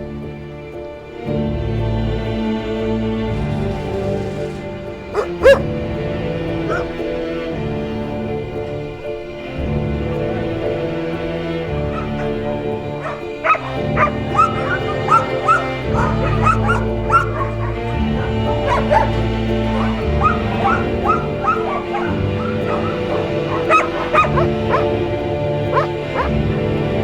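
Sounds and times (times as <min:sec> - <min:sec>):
slow background music: 0:00.0 - 0:27.0
dogs whimpering and yipping: 0:05.1 - 0:05.8, 0:06.5 - 0:07.2, 0:11.7 - 0:26.5.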